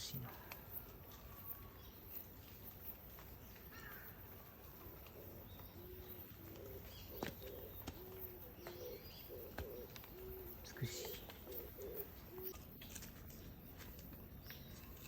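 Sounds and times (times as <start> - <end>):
dove cooing faintly: 3.9 - 13.0.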